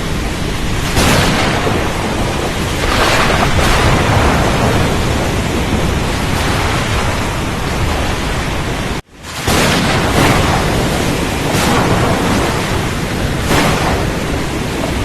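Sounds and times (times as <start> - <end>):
heavy water rushing: 0.0 - 15.0
rain: 0.0 - 15.0
wind: 0.0 - 15.0.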